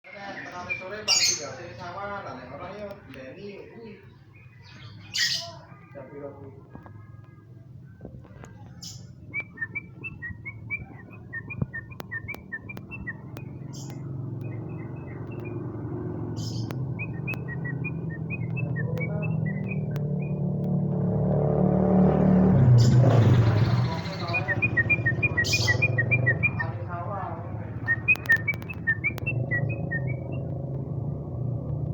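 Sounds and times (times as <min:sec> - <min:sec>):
bird chirping: 0:00.1 - 0:05.9, 0:08.3 - 0:20.7, 0:22.5 - 0:31.8
low engine hum: 0:06.7 - 0:31.9.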